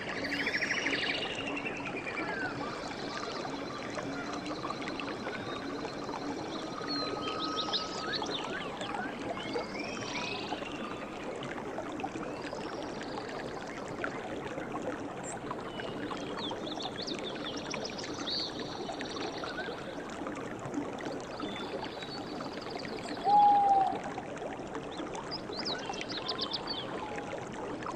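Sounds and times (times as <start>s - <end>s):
river water running: 0.0s - 27.9s
loud bird call: 23.2s - 24.0s.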